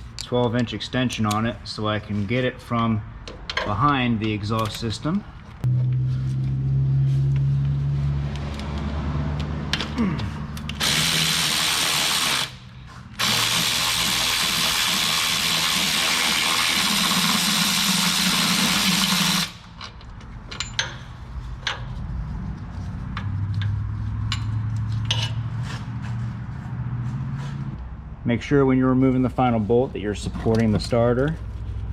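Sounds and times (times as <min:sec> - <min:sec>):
electric ratchet spinning: 0:10.6 - 0:19.7.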